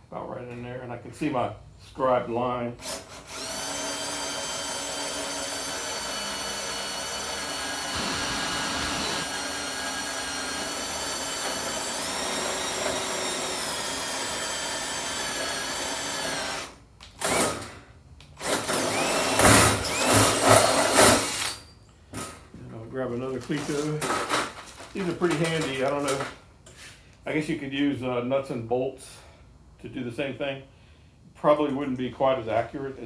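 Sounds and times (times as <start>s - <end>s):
electric drill boring metal: 2.8s - 17.6s, 18.4s - 21.6s
clattering handling noises: 23.3s - 26.8s.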